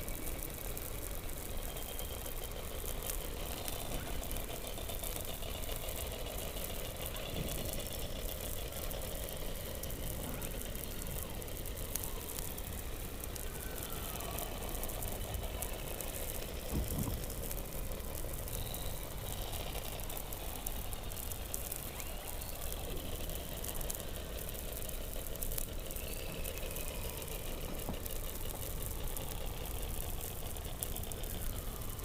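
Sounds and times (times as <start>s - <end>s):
rapid pulse trains: 0.0s - 32.0s.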